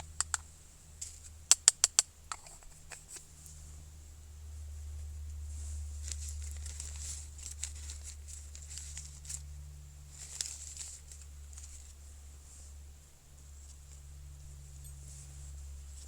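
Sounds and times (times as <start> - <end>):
low steady rumble: 0.0 - 16.0.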